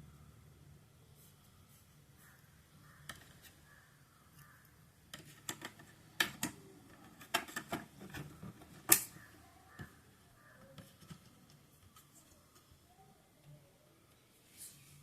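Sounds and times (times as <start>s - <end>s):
laptop parts clicking: 4.4s - 12.6s.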